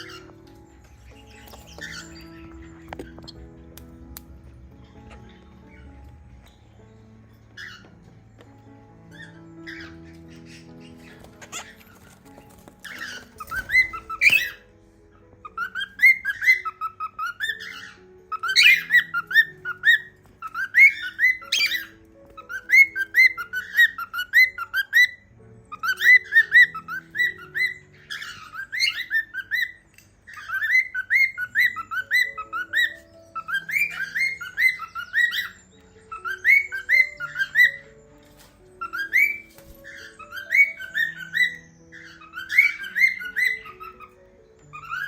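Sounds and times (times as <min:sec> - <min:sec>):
soft background music: 0:00.0 - 0:45.0
cockatiel whistling: 0:15.4 - 0:38.0, 0:38.8 - 0:45.0.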